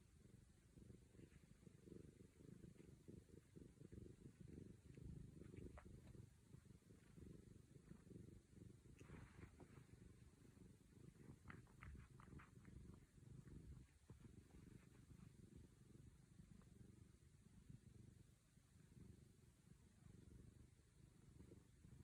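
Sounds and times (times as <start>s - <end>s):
cat purring: 0.0s - 22.0s.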